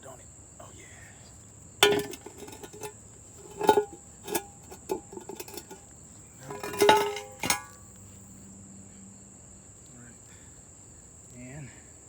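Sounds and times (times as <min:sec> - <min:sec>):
crickets trilling: 0:00.0 - 0:12.0
metal pan clanking and ringing: 0:01.8 - 0:05.8, 0:06.4 - 0:07.8.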